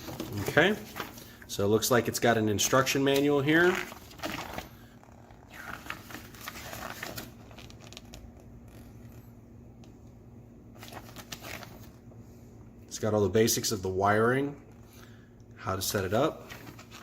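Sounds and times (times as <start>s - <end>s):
paper rustling: 0.0s - 1.4s, 2.7s - 9.2s, 10.8s - 12.0s, 16.4s - 17.0s.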